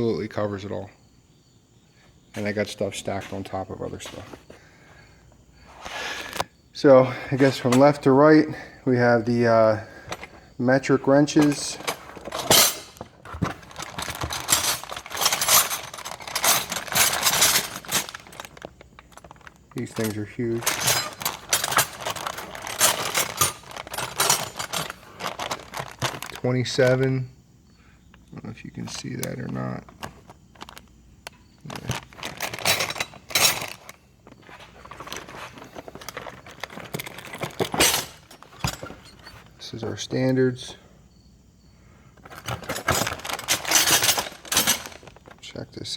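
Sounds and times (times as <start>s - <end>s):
metal wrenches clinking: 7.4s - 8.1s, 9.4s - 26.5s, 31.7s - 40.5s, 42.2s - 45.4s
packaging rustling: 11.2s - 27.0s, 28.8s - 39.5s, 42.2s - 45.4s.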